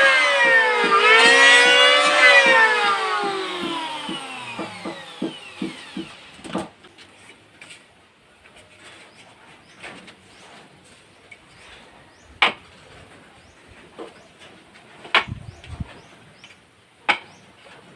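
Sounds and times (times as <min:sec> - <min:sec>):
power tool motor whining: 0:00.0 - 0:06.7.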